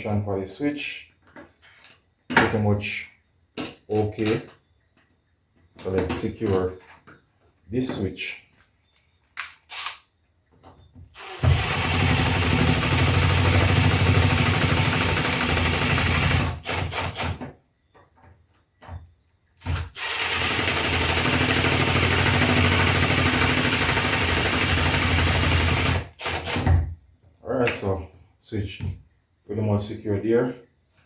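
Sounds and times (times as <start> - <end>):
power drill driving screws: 9.7 - 10.1, 11.1 - 17.4, 19.6 - 26.8.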